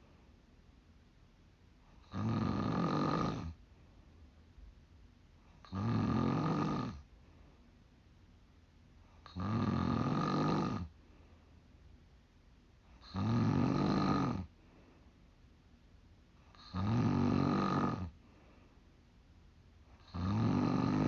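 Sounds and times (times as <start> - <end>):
quiet breaths: 0.0 - 21.0
woman snoring: 2.0 - 3.6, 5.6 - 7.0, 9.2 - 10.9, 13.0 - 14.5, 16.5 - 18.2, 20.0 - 21.0.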